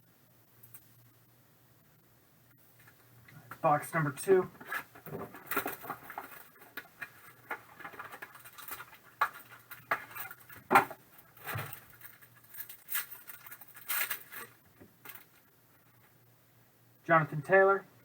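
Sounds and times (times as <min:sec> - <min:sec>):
cardboard and wrappers rustling: 0:02.8 - 0:16.1.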